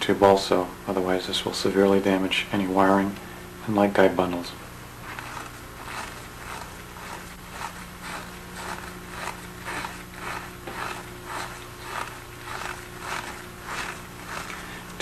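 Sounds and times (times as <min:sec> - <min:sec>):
plastic rubbing and scraping: 0:05.0 - 0:15.0.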